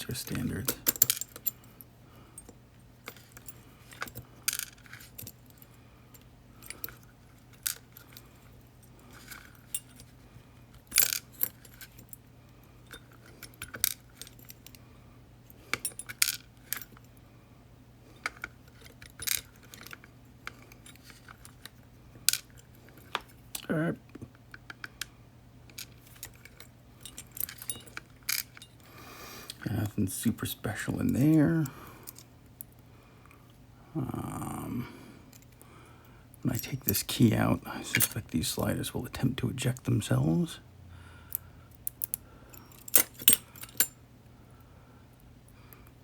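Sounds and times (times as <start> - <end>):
metal lock parts clinking: 0.0 - 1.7, 2.4 - 14.8, 15.5 - 17.1, 18.1 - 23.7, 25.7 - 29.7, 36.5 - 38.4, 41.7 - 44.0
faint steady hum: 0.0 - 46.0.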